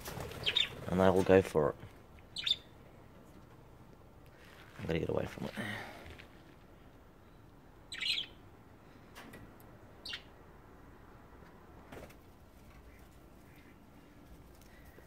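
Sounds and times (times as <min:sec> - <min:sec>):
budgerigars chirping: 0:00.4 - 0:00.8, 0:02.4 - 0:02.7, 0:07.9 - 0:08.4, 0:10.0 - 0:10.3.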